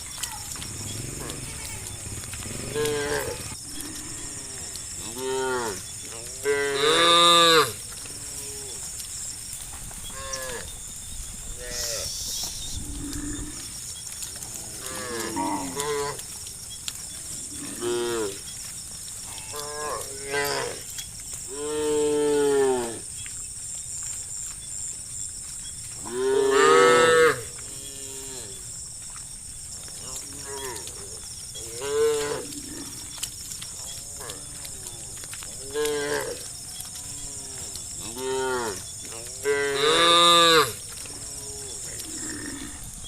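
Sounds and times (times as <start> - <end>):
cows mooing: 0.5 - 8.9, 14.4 - 16.4, 17.2 - 18.5, 19.2 - 20.9, 26.0 - 28.6, 30.0 - 43.0.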